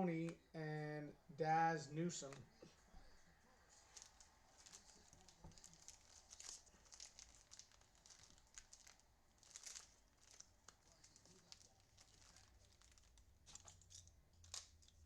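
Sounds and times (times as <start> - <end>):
foil wrapper crinkling and tearing: 3.7 - 15.0.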